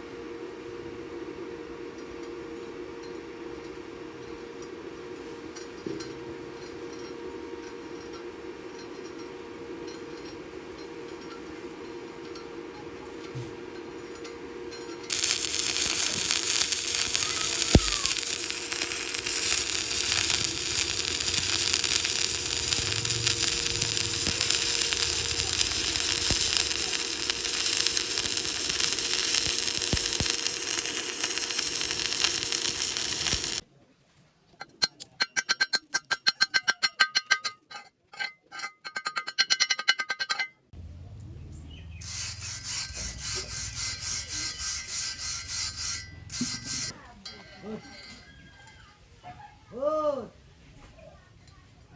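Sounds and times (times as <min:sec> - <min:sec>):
rasping noise: 0:15.1 - 0:33.6, 0:42.0 - 0:46.9
welding arc crackling and hissing: 0:15.1 - 0:33.6, 0:42.0 - 0:46.9.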